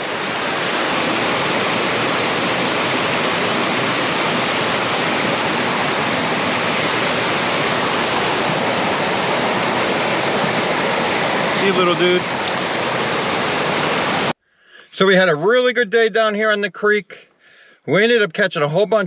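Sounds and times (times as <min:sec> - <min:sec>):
creek water rushing: 0:00.0 - 0:14.4.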